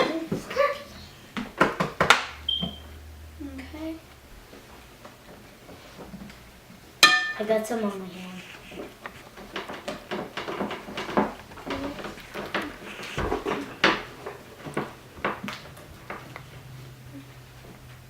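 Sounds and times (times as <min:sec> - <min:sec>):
spatula scraping and knocking bowl: 0:04.5 - 0:17.0.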